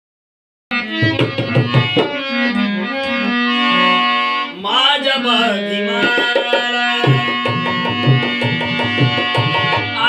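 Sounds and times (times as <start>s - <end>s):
keyboard sustained chords: 0.7s - 6.0s.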